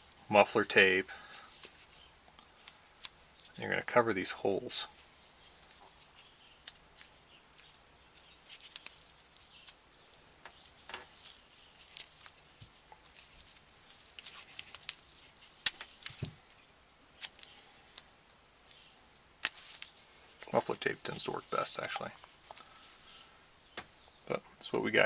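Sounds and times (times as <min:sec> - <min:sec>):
electrical tape clicking and crinkling: 0:01.2 - 0:03.6, 0:05.4 - 0:16.6, 0:17.2 - 0:23.2.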